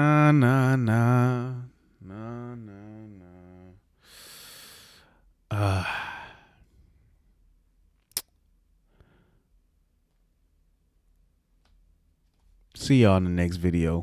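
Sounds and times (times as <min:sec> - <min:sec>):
person chanting: 0:00.0 - 0:03.9
person sighing: 0:02.0 - 0:06.7.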